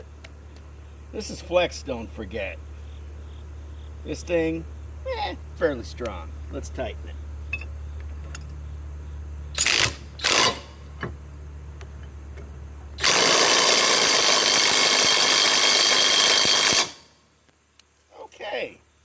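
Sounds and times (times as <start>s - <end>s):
steady low hum: 0.0s - 19.0s
impact wrench hammering: 13.0s - 17.1s.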